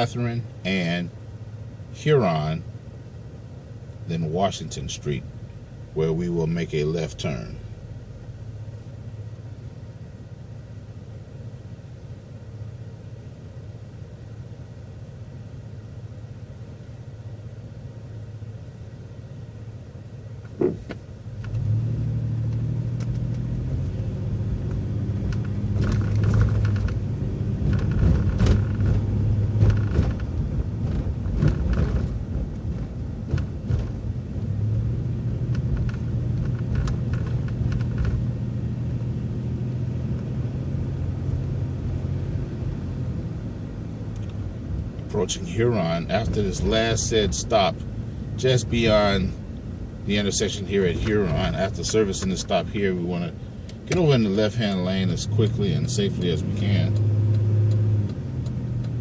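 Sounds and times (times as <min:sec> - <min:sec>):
bus engine running: 0:00.0 - 0:59.0
sharp clunk: 0:20.5 - 0:21.0
rattles: 0:25.2 - 0:34.1.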